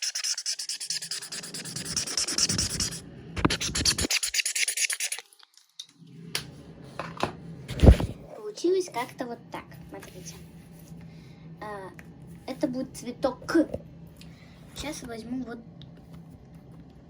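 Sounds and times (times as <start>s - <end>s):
marker scratching on paper: 0.0s - 5.2s.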